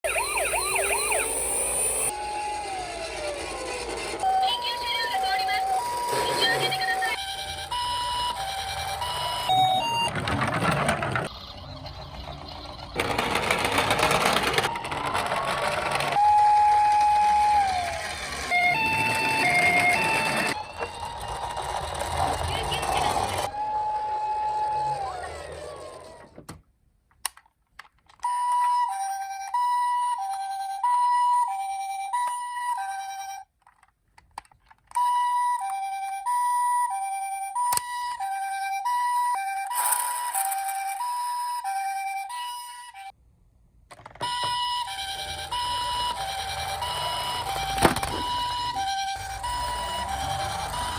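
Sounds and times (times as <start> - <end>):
electronic siren tone: 0.0 - 10.1, 14.6 - 25.5, 39.2 - 43.1, 44.2 - 50.9
toy car wheels rattling: 0.2 - 23.6, 39.4 - 42.2, 43.9 - 50.9.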